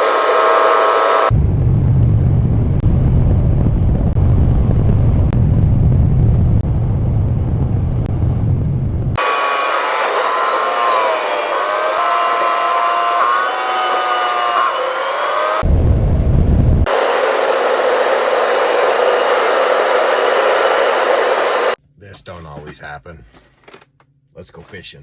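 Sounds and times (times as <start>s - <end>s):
whistling whine: 0.0s - 1.3s, 9.2s - 21.8s.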